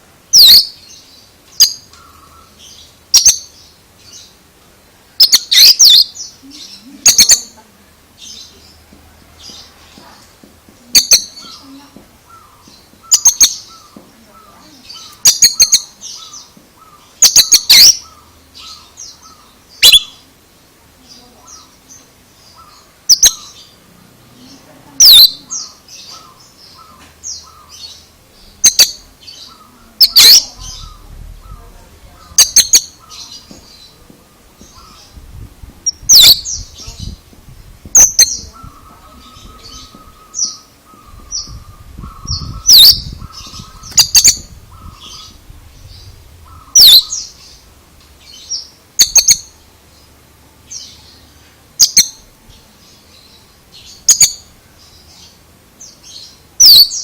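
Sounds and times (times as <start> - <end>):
soft bird chattering: 0.3 - 4.3, 5.2 - 7.6, 10.9 - 20.2, 21.0 - 23.8, 24.5 - 35.2, 35.8 - 37.2, 37.9 - 47.7, 48.3 - 49.5, 51.8 - 52.3, 53.2 - 55.4, 56.0 - 57.0
bird singing sharp notes: 25.0 - 31.6, 37.9 - 49.6
low buzzy bird trill: 38.0 - 57.0.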